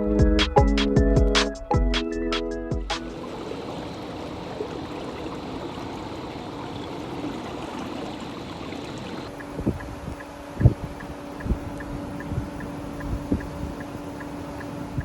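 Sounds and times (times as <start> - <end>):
background music: 0.0 - 3.2
running water rushing: 3.0 - 11.9.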